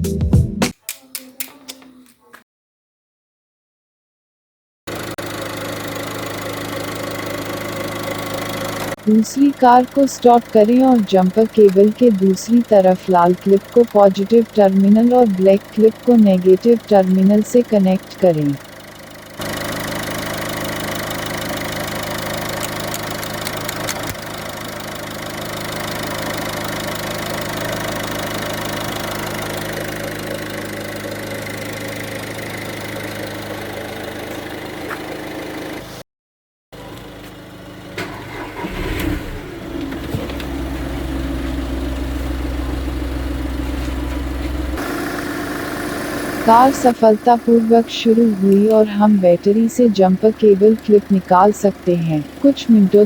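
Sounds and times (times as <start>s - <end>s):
car engine cranking: 4.9s - 35.8s, 37.9s - 53.0s
car engine idling: 4.9s - 36.0s, 36.8s - 53.0s.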